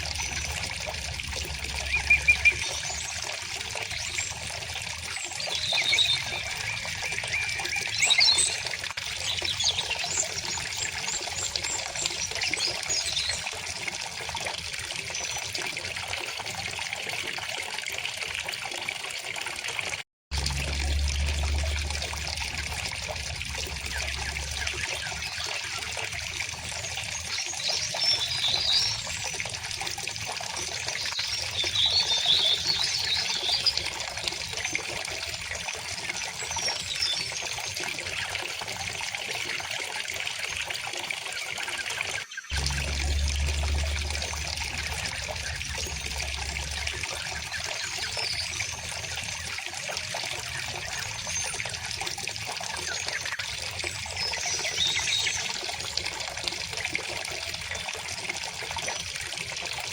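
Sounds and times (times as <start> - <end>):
river water flowing: 0.0 - 13.4, 20.3 - 37.2, 42.5 - 53.2
small birds chirping: 0.1 - 4.6.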